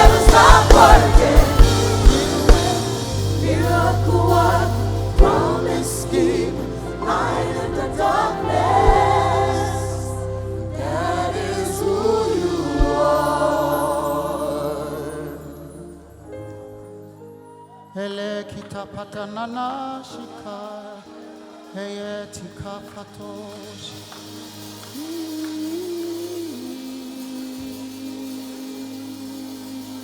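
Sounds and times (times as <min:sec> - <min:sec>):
band accompaniment: 0:00.0 - 0:16.7, 0:19.2 - 0:30.0
gospel choir singing: 0:00.0 - 0:30.0.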